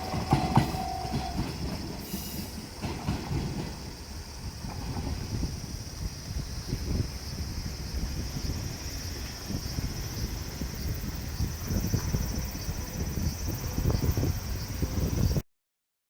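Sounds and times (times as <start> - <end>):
cicadas droning: 0.0 - 15.4
wind gusting on microphone: 0.0 - 15.4.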